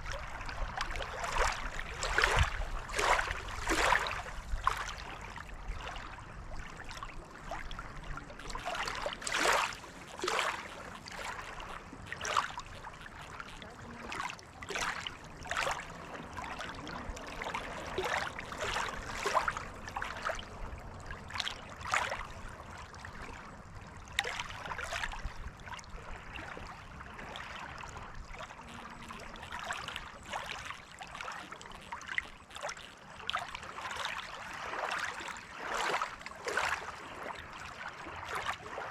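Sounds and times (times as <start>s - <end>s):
lake water lapping: 0.0s - 38.9s.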